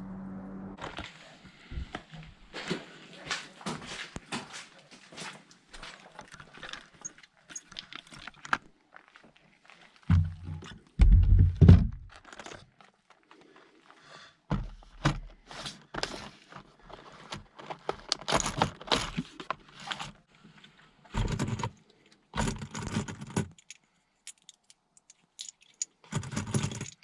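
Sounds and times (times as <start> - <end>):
metal objects jangling: 25.4 - 27.0.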